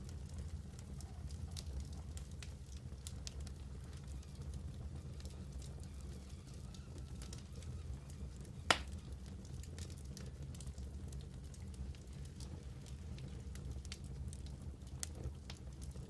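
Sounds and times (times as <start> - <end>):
wood fire crackling: 0.0 - 16.0
loud pop from fire: 8.7 - 9.0.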